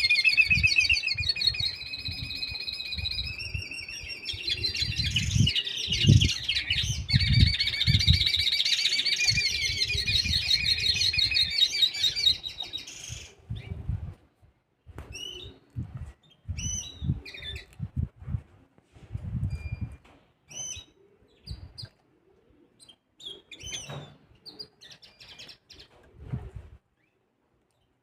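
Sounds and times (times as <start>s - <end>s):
finch singing chirps and trills: 0.0s - 13.7s.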